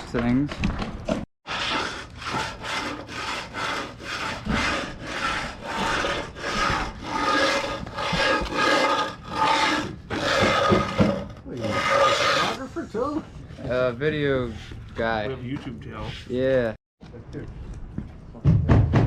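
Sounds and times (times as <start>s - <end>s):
hand groover scraping concrete: 1.5s - 12.6s.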